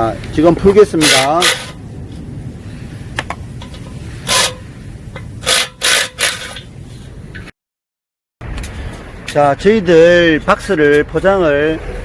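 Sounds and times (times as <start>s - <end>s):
steady low rumble: 0.0s - 5.8s, 6.4s - 7.5s, 8.4s - 12.0s
metallic scraping of hand tool: 0.9s - 1.8s, 3.6s - 6.7s.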